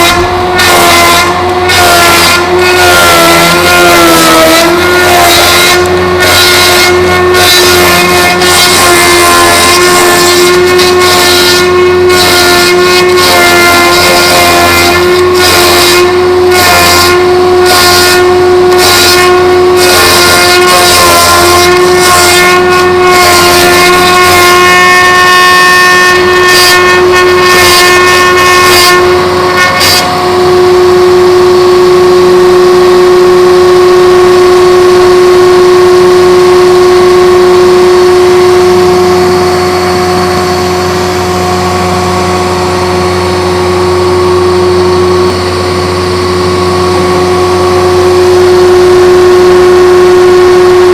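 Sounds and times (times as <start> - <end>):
cutter rasping on log: 0.0 - 30.2
machine whining: 0.0 - 50.9.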